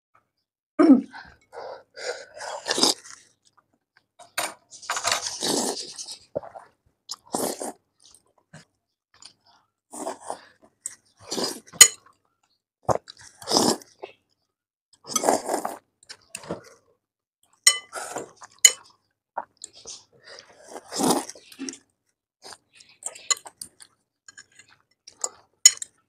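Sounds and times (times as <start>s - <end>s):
chewing noodles: 2.2s - 4.1s, 5.2s - 12.2s, 12.8s - 14.3s, 17.8s - 26.0s.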